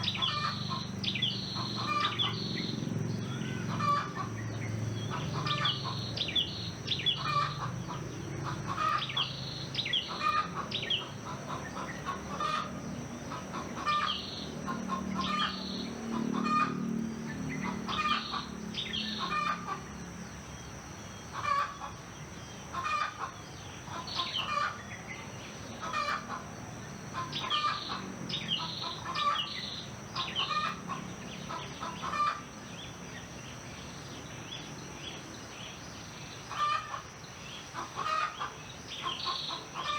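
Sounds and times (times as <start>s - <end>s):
small birds chirping: 0.0s - 39.9s
chickens clucking: 3.7s - 6.1s, 7.1s - 9.2s, 9.9s - 16.9s, 21.3s - 22.0s, 22.7s - 24.8s, 27.1s - 29.6s, 30.2s - 32.5s, 36.5s - 37.1s, 37.7s - 39.9s.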